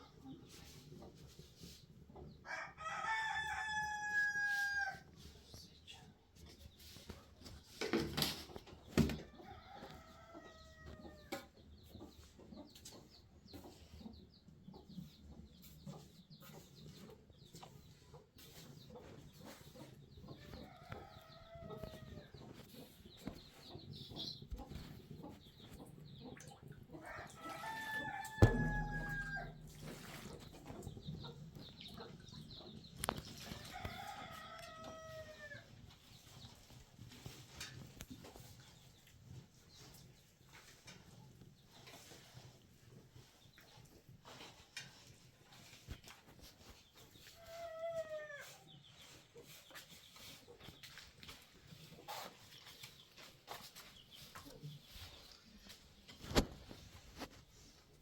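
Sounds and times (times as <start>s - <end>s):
rooster crowing: 2.5s - 5.0s, 27.1s - 29.8s
knocks: 28.3s - 30.9s
low thump: 28.4s - 30.8s.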